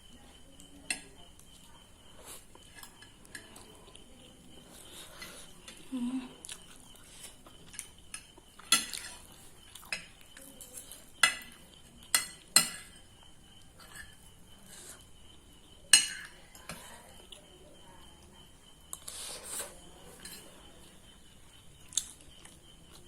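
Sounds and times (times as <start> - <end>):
cutlery clinking on a plate: 7.6 - 13.0, 13.8 - 14.3, 15.9 - 16.9, 20.1 - 20.5.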